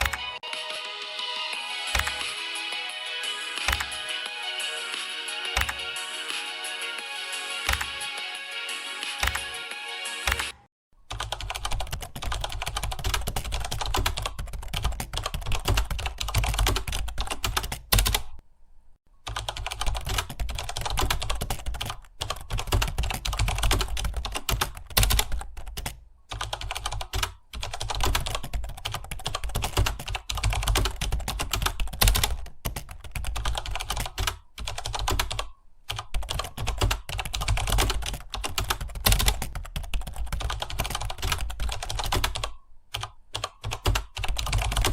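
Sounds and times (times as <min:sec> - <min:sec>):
typing on computer keyboard: 0:01.9 - 0:02.3, 0:03.6 - 0:04.0, 0:05.5 - 0:06.4, 0:07.6 - 0:08.0, 0:09.2 - 0:09.5, 0:10.2 - 0:18.4, 0:19.2 - 0:44.9.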